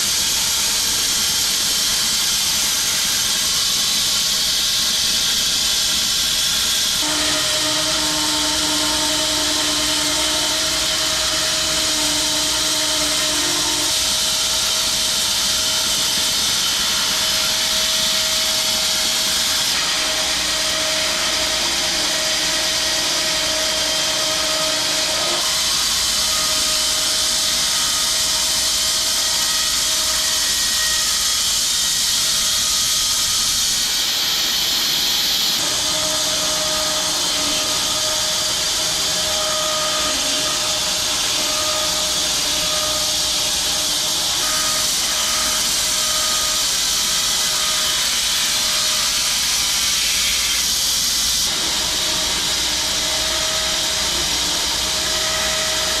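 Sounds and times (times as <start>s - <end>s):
bandsaw cutting log hiss: 0.0s - 56.0s
machine hum: 7.0s - 18.6s.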